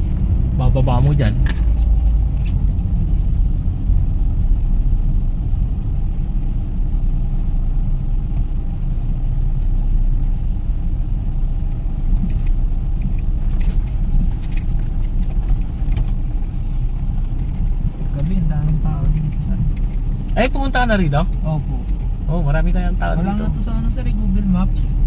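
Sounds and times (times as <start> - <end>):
car engine and road noise: 0.0 - 25.0
light clicks and rattles: 12.2 - 22.6.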